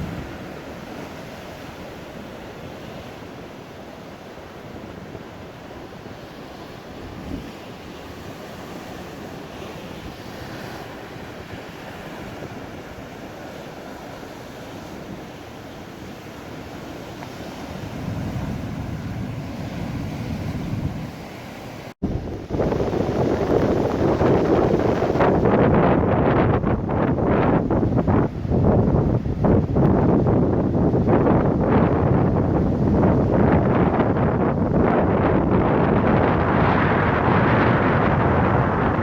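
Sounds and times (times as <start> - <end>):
sea surf breaking: 0.0 - 39.0
wind buffeting microphone: 14.2 - 39.0.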